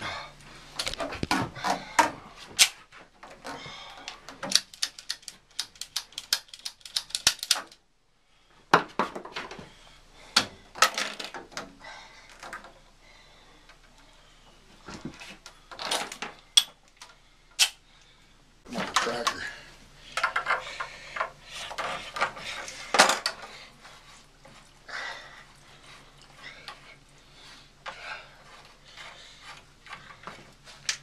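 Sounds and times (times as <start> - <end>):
tools and pipe fittings rattling: 3.2 - 7.8, 10.4 - 11.7, 14.9 - 17.2, 18.7 - 23.6.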